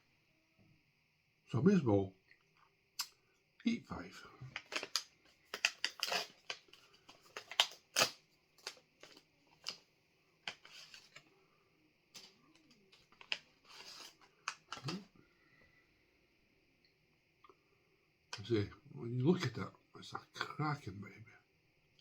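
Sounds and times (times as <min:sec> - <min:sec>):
plastic wrapper crinkling: 0:04.4 - 0:09.8, 0:10.5 - 0:11.2, 0:12.2 - 0:15.0.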